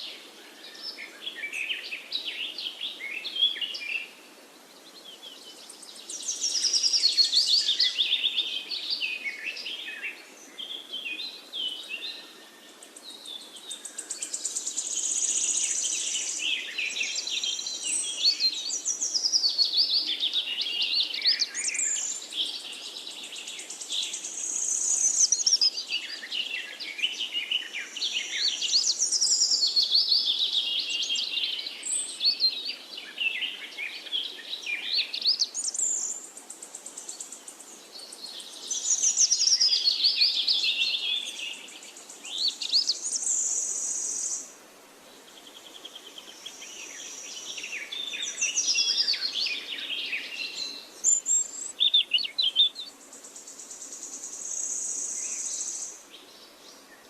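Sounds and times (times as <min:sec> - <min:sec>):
birds chirping and singing: 0:04.8 - 0:44.4, 0:45.5 - 0:57.0.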